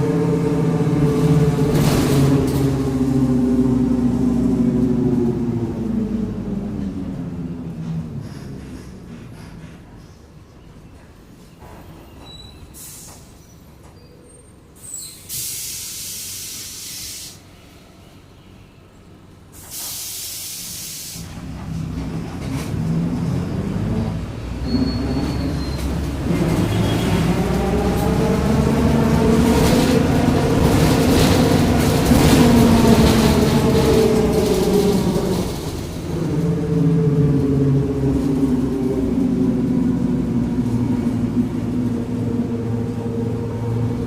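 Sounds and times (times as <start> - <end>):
bus pulling away with whine: 0.0 - 44.0
compressed air hiss: 12.8 - 13.3, 15.1 - 17.5, 19.6 - 21.3.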